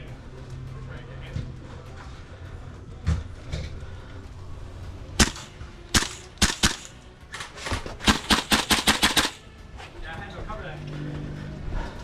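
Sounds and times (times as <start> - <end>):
airsoft rifle shots: 5.2 - 7.0, 8.0 - 9.5.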